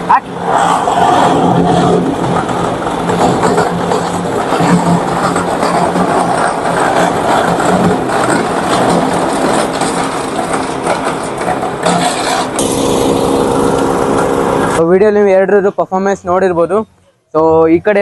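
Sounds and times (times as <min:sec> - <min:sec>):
engine running: 0:00.0 - 0:15.6
wood chipper grinding: 0:00.7 - 0:14.9.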